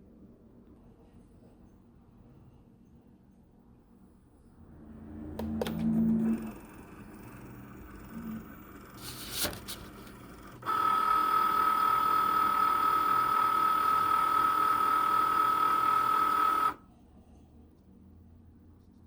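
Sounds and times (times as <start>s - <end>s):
cutting machine motor whine: 5.4s - 16.8s.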